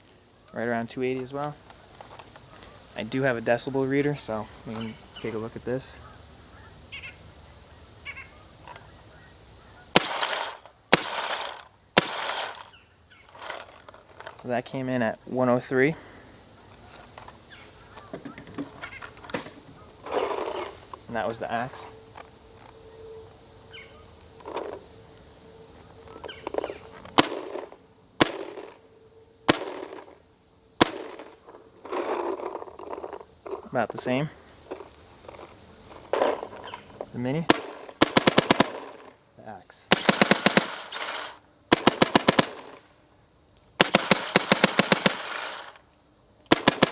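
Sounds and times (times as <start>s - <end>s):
faint bird chirps: 4.6s - 10.4s, 12.1s - 13.4s, 16.5s - 20.8s, 22.7s - 24.2s, 25.7s - 27.0s
paintball marker shots: 10.0s - 12.7s, 26.3s - 28.8s, 29.5s - 30.1s, 30.8s - 31.4s, 37.5s - 39.1s, 39.9s - 42.8s, 43.8s - 45.8s, 46.5s - 46.9s.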